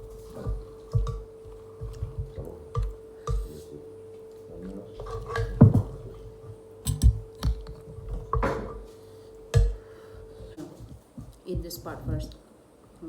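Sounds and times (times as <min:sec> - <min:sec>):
faint steady hum: 0:00.0 - 0:13.0
utensils clinking on dishes: 0:05.0 - 0:06.3.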